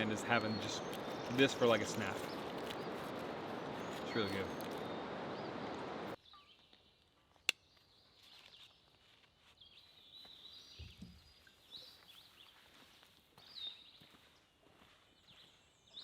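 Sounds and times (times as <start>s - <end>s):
faint bird chirps: 0.0s - 9.0s.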